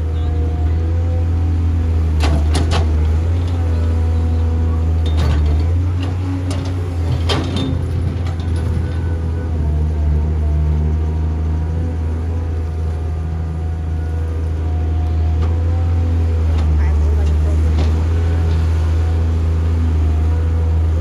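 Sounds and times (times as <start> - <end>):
diesel engines humming: 0.0 - 21.0
metal clanks: 4.9 - 9.2.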